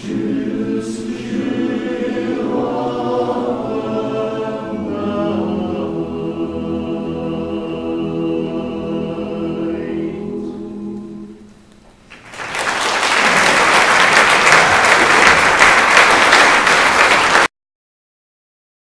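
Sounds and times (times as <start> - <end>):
barbershop chorus singing a cappella: 0.0 - 11.5
audience applause: 12.1 - 17.5.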